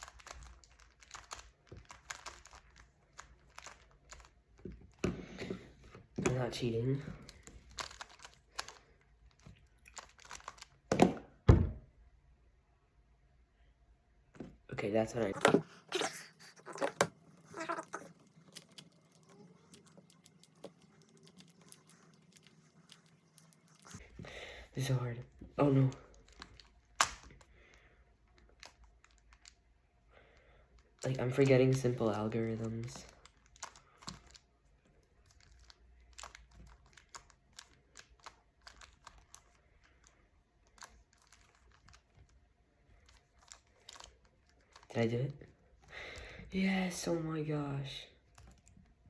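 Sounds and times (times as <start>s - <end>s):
rubik's cube clicking: 0.0s - 4.3s, 7.7s - 8.8s, 9.9s - 10.7s
person muttering: 15.4s - 18.2s.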